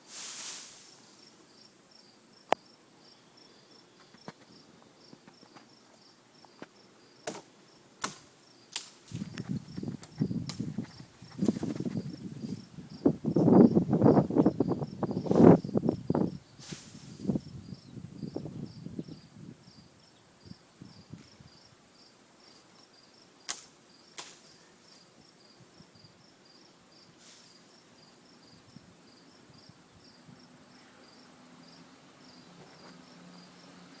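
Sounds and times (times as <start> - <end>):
cricket chirping: 0.3 - 34.0
rustling and thumping: 9.1 - 12.7.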